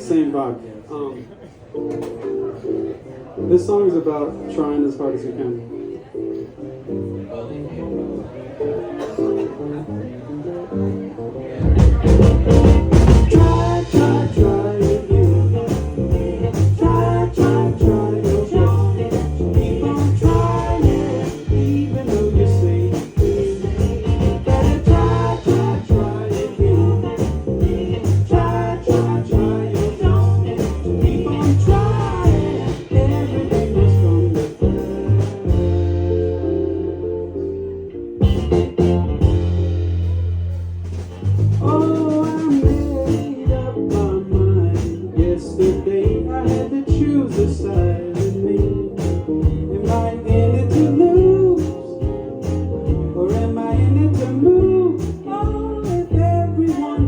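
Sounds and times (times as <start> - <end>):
live band playing: 5.7 - 57.0
bass and guitar: 6.2 - 57.0
drums keeping steady beat: 11.7 - 36.4, 38.2 - 57.0
person singing: 12.5 - 37.6, 41.6 - 57.0.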